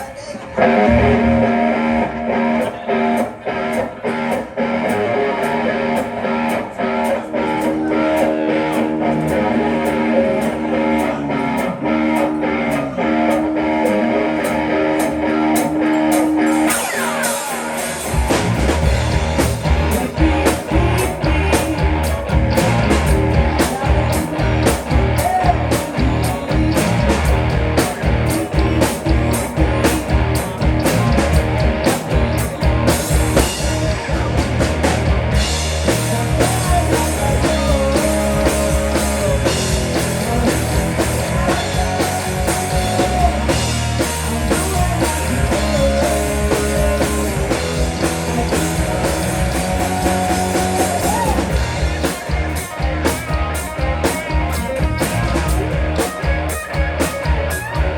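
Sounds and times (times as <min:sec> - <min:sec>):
electric guitar lead line: 0:00.0 - 0:57.9
rock band playing: 0:00.0 - 0:57.9.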